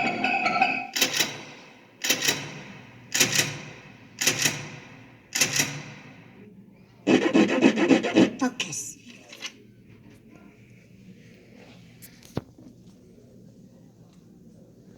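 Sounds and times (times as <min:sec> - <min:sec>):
sharp mechanical double clack: 0:00.9 - 0:06.2.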